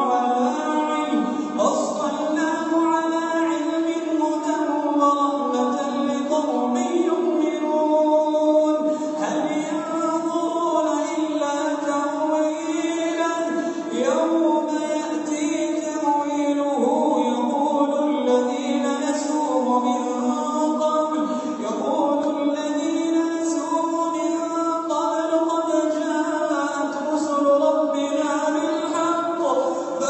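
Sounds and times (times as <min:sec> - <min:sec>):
person chanting recitation: 0:00.0 - 0:30.0.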